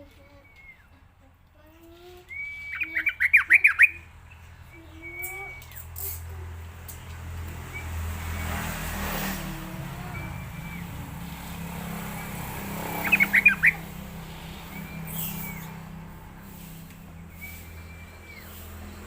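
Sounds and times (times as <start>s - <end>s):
low rumble of distant traffic: 0.0s - 19.0s
short whistled bird notes: 2.3s - 3.9s, 4.7s - 6.2s, 14.5s - 19.0s
bird chattering: 2.3s - 19.0s.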